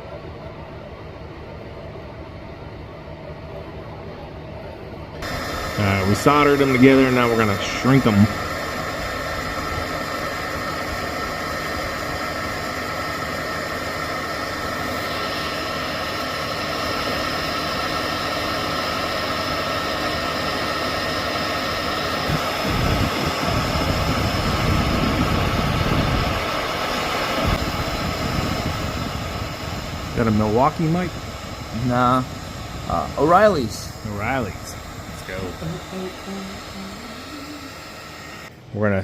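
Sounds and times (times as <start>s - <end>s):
heat gun blowing with fan whine: 0.0s - 38.6s.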